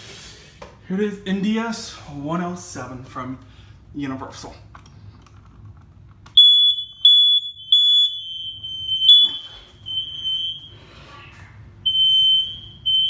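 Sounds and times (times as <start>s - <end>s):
smoke alarm beeping: 6.3s - 10.9s, 11.8s - 13.0s
lower alarm tone: 6.4s - 10.9s, 11.8s - 13.0s.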